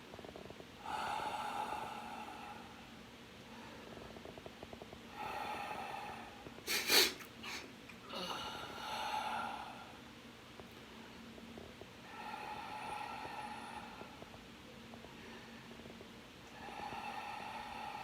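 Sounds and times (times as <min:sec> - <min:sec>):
person breathing through stuffy nose: 0:05.2 - 0:07.6
sniff-snort: 0:06.7 - 0:07.6.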